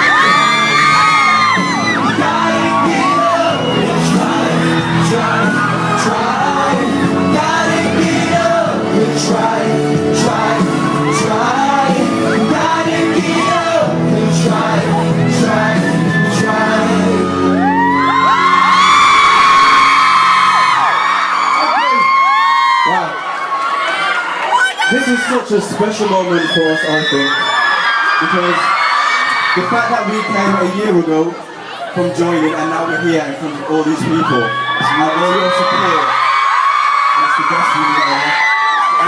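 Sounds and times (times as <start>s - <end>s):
live pop music with singing: 0.0s - 23.2s, 32.0s - 39.0s
crowd screaming and cheering: 0.0s - 39.0s.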